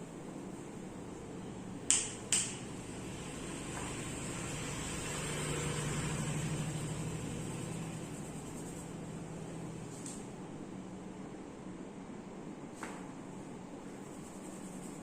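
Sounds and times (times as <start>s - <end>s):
steady hum: 0.0s - 15.0s
sharp snaps: 1.8s - 2.7s.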